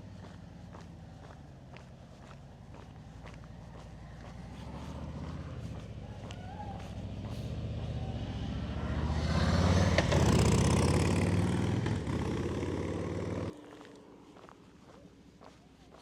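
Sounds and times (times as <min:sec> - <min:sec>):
vehicle driving past: 0:02.3 - 0:13.6.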